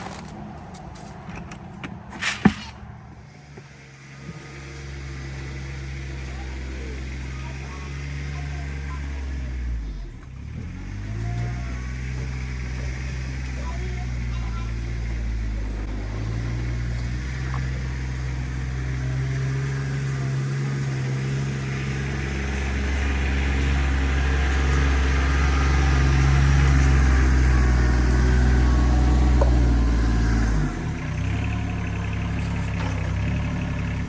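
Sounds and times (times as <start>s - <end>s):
tractor engine running: 0.0s - 34.0s.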